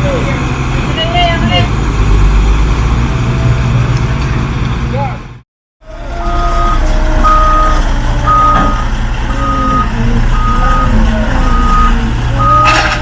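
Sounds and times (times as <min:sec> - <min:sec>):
diesel engine running: 0:00.0 - 0:13.0
truck reversing alarm beeping: 0:05.9 - 0:13.0.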